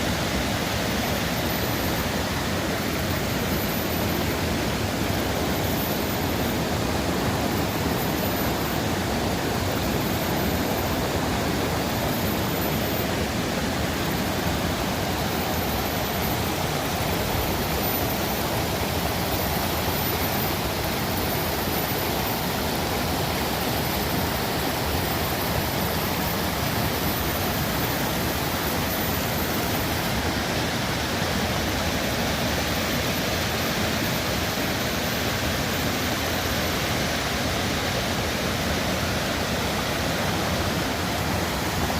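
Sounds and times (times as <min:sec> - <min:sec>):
running water rushing: 0:00.0 - 0:41.9.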